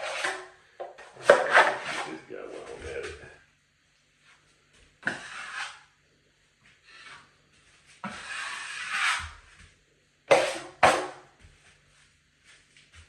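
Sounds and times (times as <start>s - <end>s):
drywall knife scraping compound: 0.0s - 3.2s, 5.0s - 5.9s, 6.8s - 9.6s, 10.3s - 11.2s.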